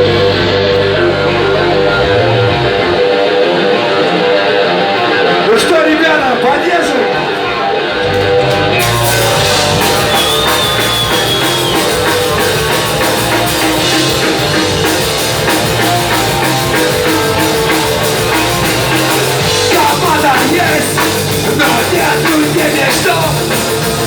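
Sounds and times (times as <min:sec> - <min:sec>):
electric guitars: 0:00.0 - 0:24.0
drum kit steady beat: 0:08.1 - 0:24.0.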